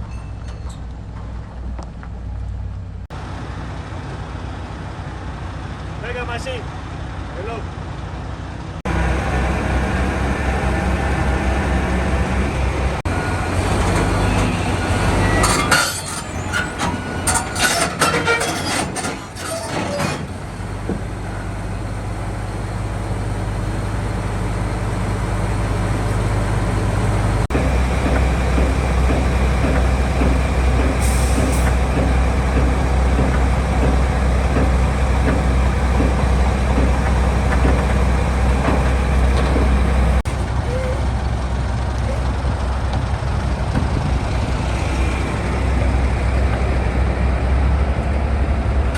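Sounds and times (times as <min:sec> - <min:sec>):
diesel engine running: 0:06.6 - 0:48.9.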